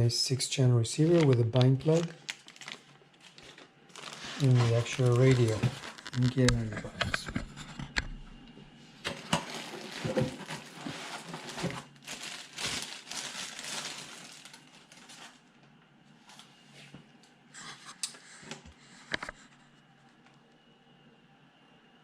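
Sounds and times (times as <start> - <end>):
packaging crinkling and rustling: 1.0 - 7.3, 9.0 - 15.5.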